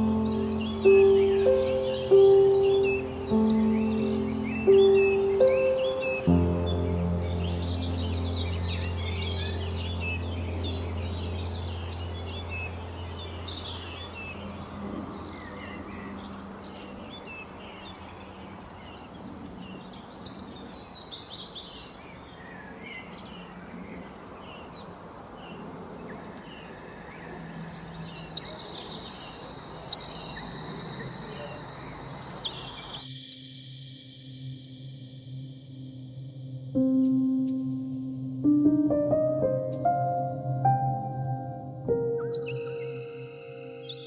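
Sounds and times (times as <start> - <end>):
low held music tone: 0.0 - 19.5, 36.1 - 44.0
small birds chirping: 0.0 - 44.0.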